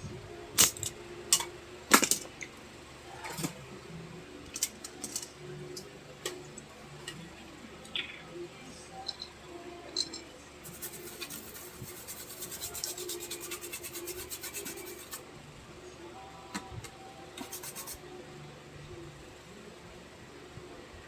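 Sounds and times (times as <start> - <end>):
scratching on hard surface: 10.7 - 15.2.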